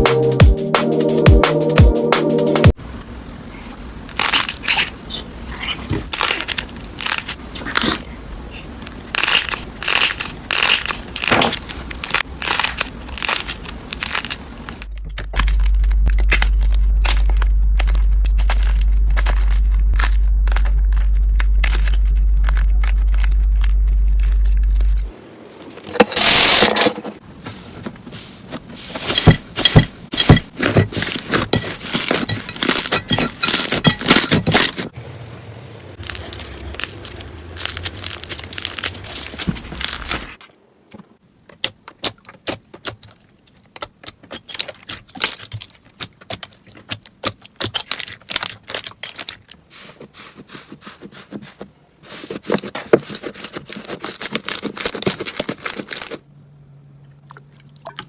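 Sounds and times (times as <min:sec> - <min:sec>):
slime crackling and popping: 0:09.0 - 0:25.0, 0:36.0 - 0:40.4, 0:41.6 - 0:49.6.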